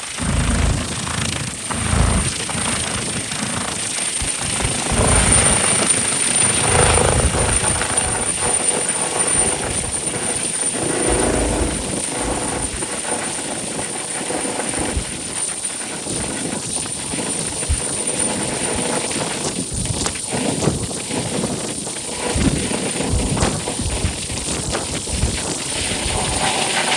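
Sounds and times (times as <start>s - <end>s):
helicopter rotor and turbine: 0.0s - 26.9s.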